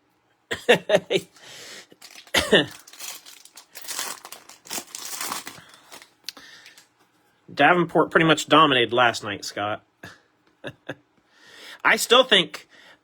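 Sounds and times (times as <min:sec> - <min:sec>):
person clearing throat or coughing: 0:00.5 - 0:01.3, 0:02.3 - 0:02.9
card pack wrappers tearing and crinkling: 0:01.3 - 0:06.8.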